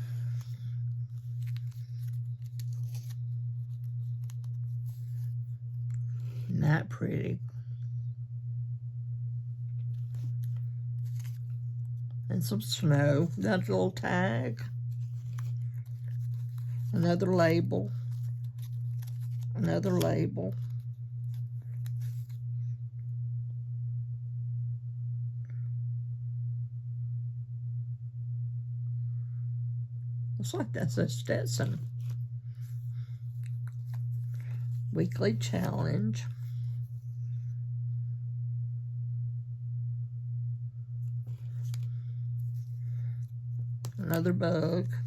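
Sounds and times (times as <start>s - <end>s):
paper rustling: 0.0s - 5.4s, 9.9s - 11.6s, 14.9s - 22.4s, 41.2s - 43.0s
steady low hum: 0.0s - 45.0s.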